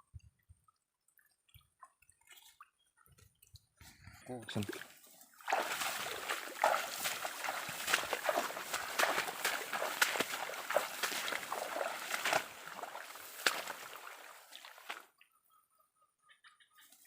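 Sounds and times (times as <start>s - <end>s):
stream water splashing: 4.5s - 15.2s.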